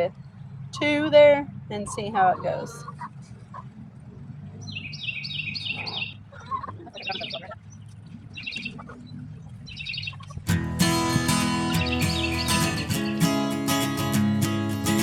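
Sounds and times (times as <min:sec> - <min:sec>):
songbird chirping: 0:00.0 - 0:15.0
strummed acoustic guitar music: 0:10.3 - 0:15.0.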